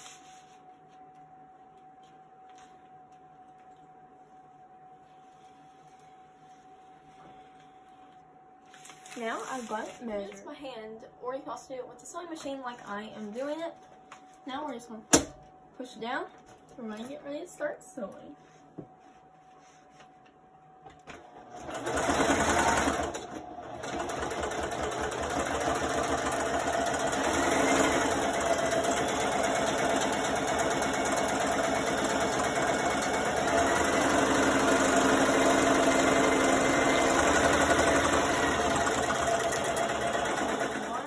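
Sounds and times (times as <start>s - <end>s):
electric sewing machine stitching: 21.2s - 41.0s.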